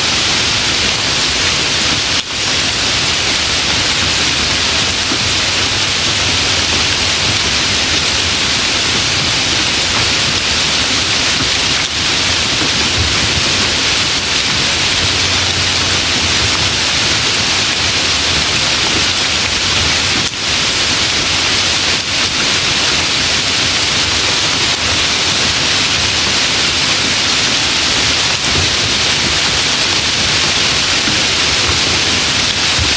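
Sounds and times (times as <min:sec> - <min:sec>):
light rain falling: 0:00.0 - 0:32.9.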